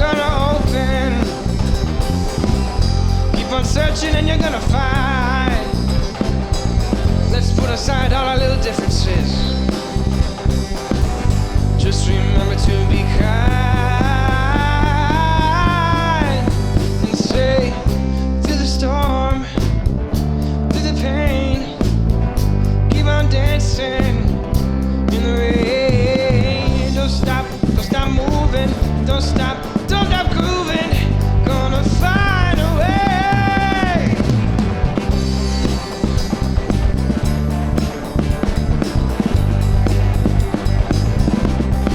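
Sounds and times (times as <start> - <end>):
live rock band playing: 0.0 - 41.9.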